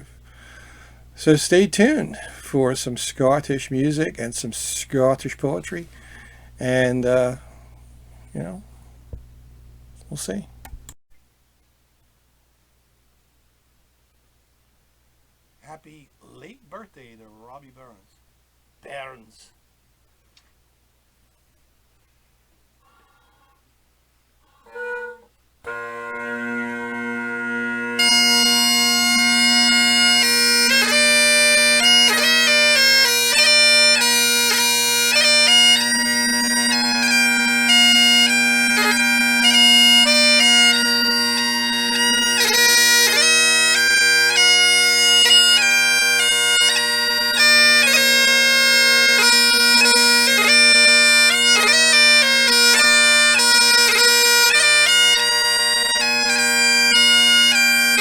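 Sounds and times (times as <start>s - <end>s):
bagpipe chanter melody: 0.0s - 7.4s, 24.5s - 58.0s
bagpipe drones humming: 24.6s - 58.0s.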